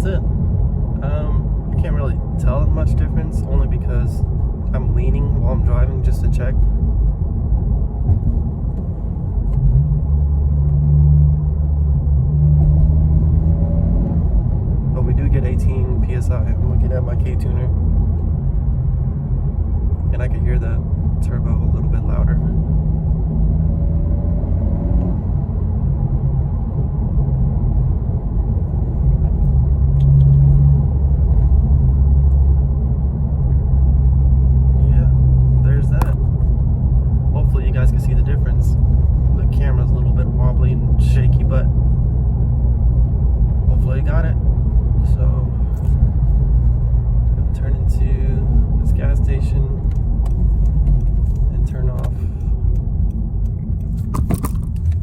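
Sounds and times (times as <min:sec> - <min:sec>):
car engine droning in cabin: 0:00.0 - 0:55.0
road rumble: 0:00.0 - 0:55.0.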